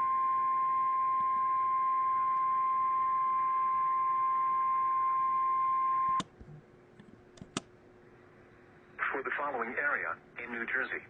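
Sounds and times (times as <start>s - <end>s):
steady warning tone: 0.0s - 6.2s.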